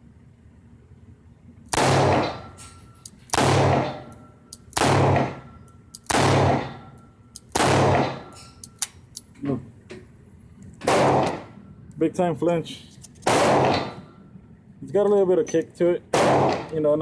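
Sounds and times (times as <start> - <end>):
revolver gunshots with echo: 1.7 - 2.6, 3.3 - 4.2, 4.8 - 8.4, 10.8 - 11.6, 13.2 - 14.1, 16.1 - 16.8
revolver action clicks: 7.0 - 7.6.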